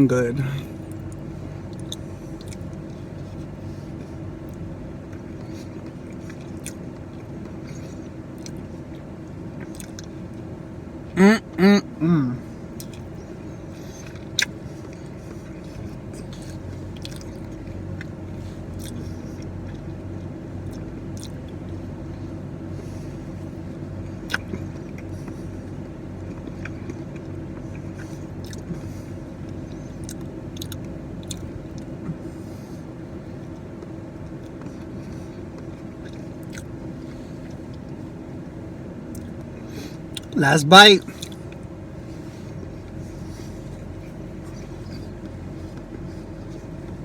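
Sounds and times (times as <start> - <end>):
low background hum: 0.0 - 47.0
person chewing and biting: 9.6 - 10.2, 14.0 - 19.9, 20.6 - 21.5, 24.3 - 25.1, 26.3 - 28.8, 30.0 - 31.9, 35.6 - 37.6.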